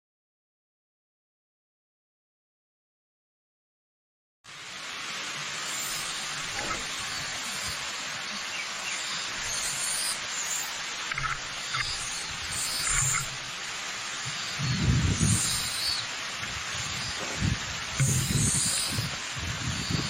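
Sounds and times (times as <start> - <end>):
low rumbles of falling water: 4.5 - 20.0
waterfall rushing: 4.5 - 20.0
birds chirping: 5.6 - 20.0.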